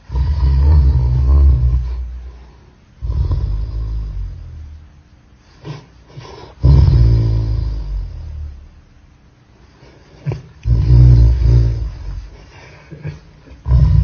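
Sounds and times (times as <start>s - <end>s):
slowed dog barks and growls: 10.1s - 14.0s.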